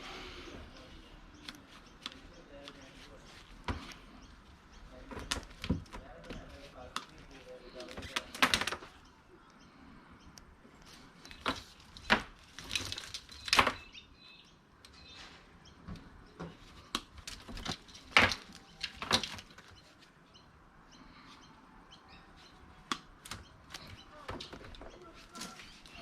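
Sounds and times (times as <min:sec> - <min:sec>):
plastic plugs and cords clacking: 0:05.0 - 0:09.0, 0:15.9 - 0:19.9.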